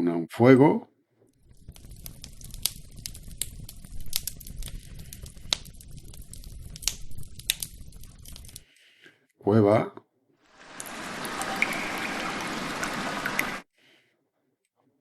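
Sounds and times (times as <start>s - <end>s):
low rumble: 1.4s - 8.6s
wood fire crackling: 1.4s - 8.7s, 10.6s - 13.6s.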